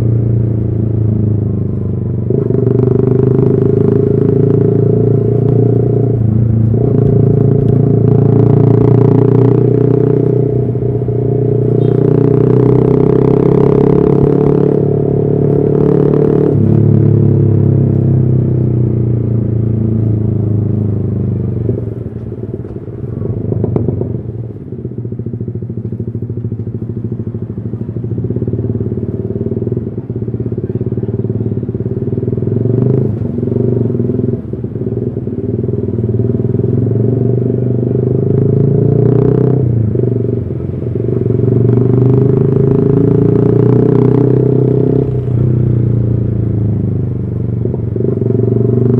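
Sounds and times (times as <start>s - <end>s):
motorcycle engine running: 0.0s - 48.9s.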